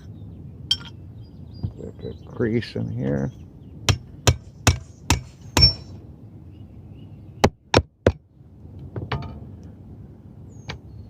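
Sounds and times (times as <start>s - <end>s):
hammer striking metal: 3.9s - 5.9s.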